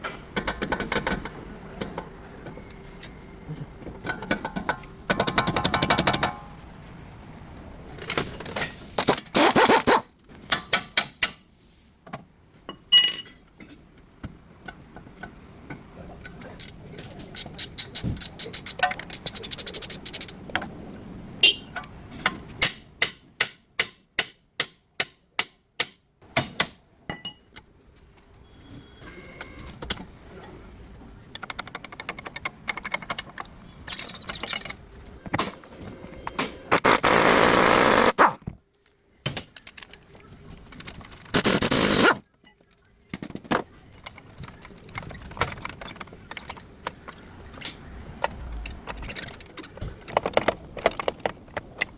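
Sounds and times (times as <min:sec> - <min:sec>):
loud bursts of noise: 0:35.5 - 0:38.4.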